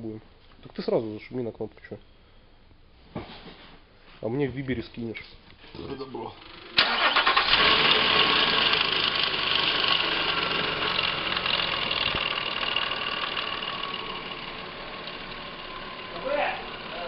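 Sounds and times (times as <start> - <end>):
engine running with knocking: 7.7 - 17.0.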